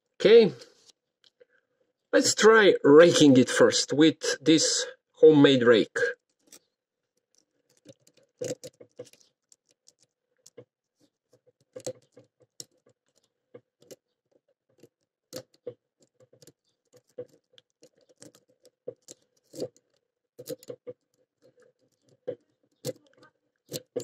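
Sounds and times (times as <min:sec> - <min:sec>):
lock pick clicking and scraping: 0:06.2 - 0:24.0.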